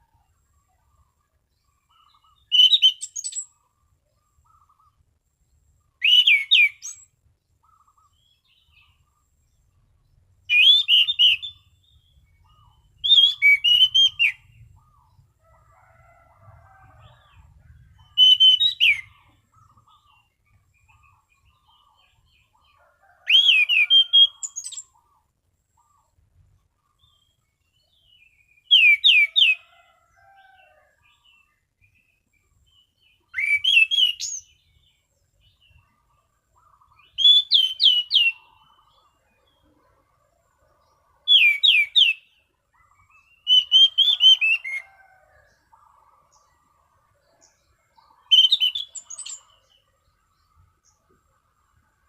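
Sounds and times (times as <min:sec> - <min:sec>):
thrush whistled song: 0:02.1 - 0:03.6, 0:05.9 - 0:08.1, 0:10.4 - 0:14.9, 0:17.9 - 0:19.8, 0:23.2 - 0:25.0, 0:28.2 - 0:29.7, 0:33.2 - 0:34.6, 0:36.6 - 0:38.6, 0:41.3 - 0:42.3, 0:42.9 - 0:45.0, 0:48.2 - 0:49.5.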